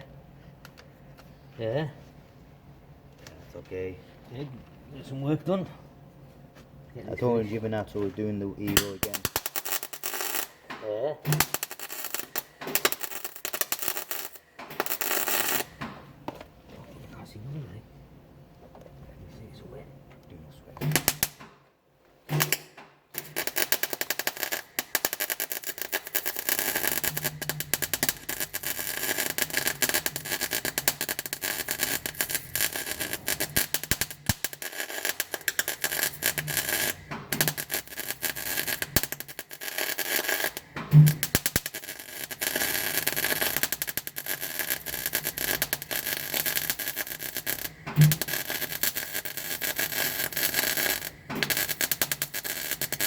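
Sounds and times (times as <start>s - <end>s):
welding arc crackle: 8.6s - 15.8s, 20.8s - 21.4s, 22.3s - 53.0s.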